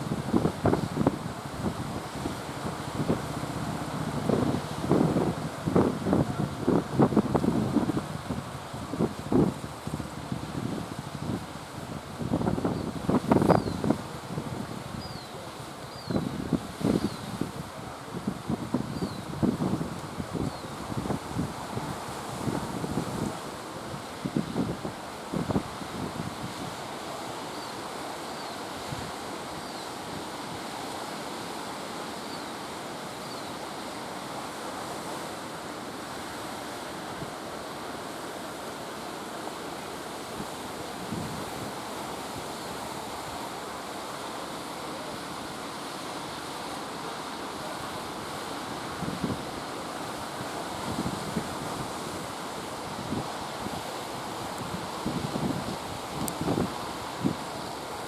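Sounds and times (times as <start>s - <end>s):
surf breaking: 0.0s - 8.3s
wind buffeting microphone: 0.0s - 15.2s.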